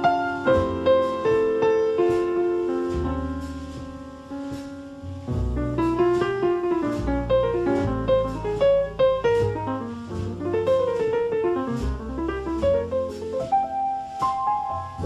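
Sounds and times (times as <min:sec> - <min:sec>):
piano background music: 0:00.0 - 0:15.0
bass line: 0:02.2 - 0:13.4.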